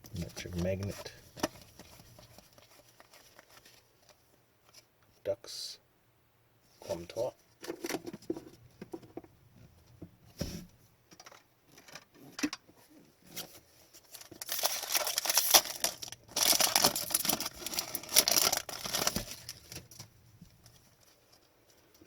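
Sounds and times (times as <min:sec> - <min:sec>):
plastic wrapper tearing and crinkling: 0:14.1 - 0:20.1.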